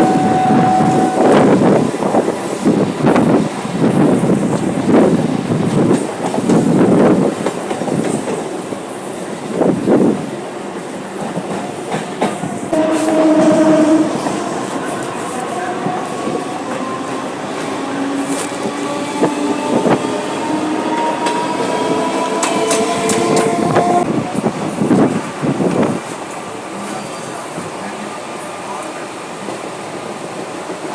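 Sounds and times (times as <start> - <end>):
train horn: 0.0 - 1.8, 12.7 - 24.2
train wheels clattering over rail joints: 20.9 - 24.0.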